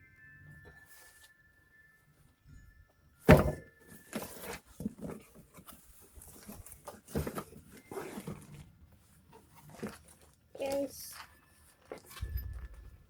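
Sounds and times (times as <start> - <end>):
cardboard box thumping down: 3.2 - 5.2.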